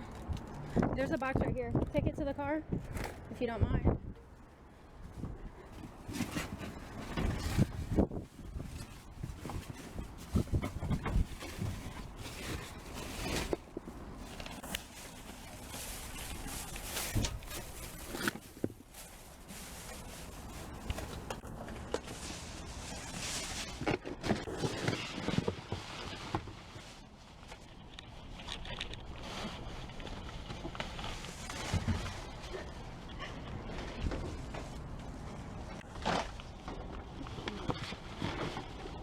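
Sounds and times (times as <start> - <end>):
rummaging scrapes and rustles: 5.0 - 39.0.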